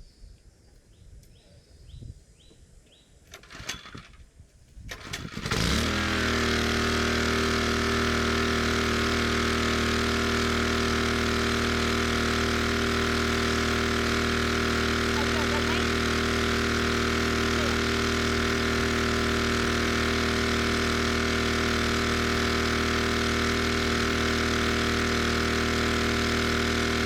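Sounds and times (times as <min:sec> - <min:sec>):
rattles: 0:03.3 - 0:04.3
small gasoline engine running: 0:04.9 - 0:27.0.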